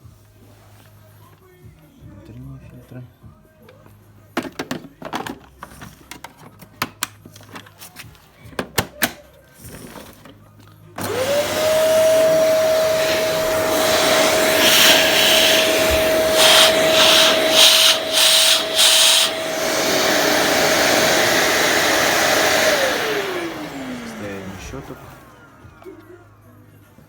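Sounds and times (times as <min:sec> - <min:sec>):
vacuum cleaner motor whine: 0:11.0 - 0:26.6
rushing air: 0:11.9 - 0:23.8.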